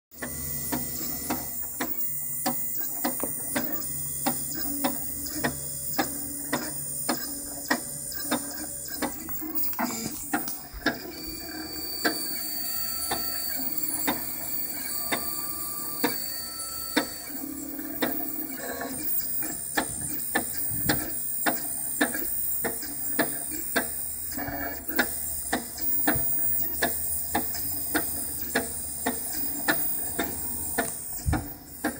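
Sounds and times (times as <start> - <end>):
stepper motors humming and whining: 0.2 - 31.9.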